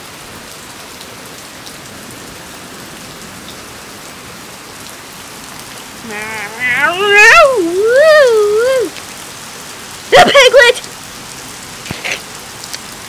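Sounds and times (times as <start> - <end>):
heavy rain pouring: 0.0 - 13.0
person's high wavering voice: 6.0 - 9.0, 10.1 - 10.8.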